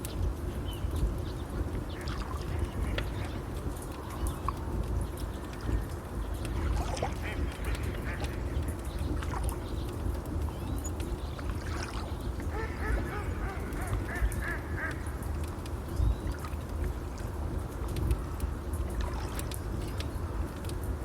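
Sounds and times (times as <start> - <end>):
waterfowl calls: 1.9 - 3.6, 6.6 - 9.5, 11.7 - 15.4
water rushing: 11.4 - 15.5, 18.8 - 20.6.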